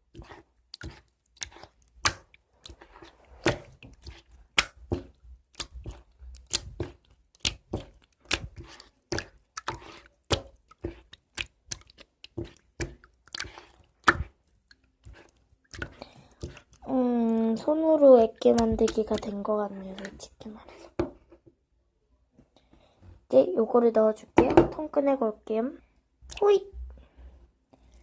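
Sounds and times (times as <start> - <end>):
slime squelching and popping: 0.0 - 20.6.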